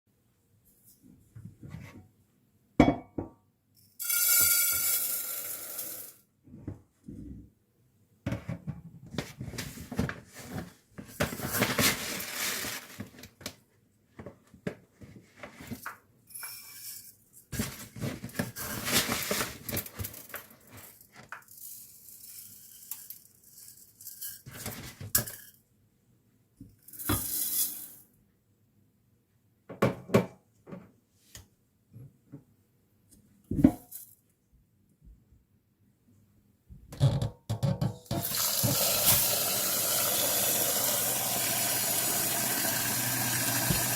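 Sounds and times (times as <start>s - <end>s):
pots and utensils clinking: 4.0s - 6.1s
rushing pouring noise: 38.2s - 43.9s.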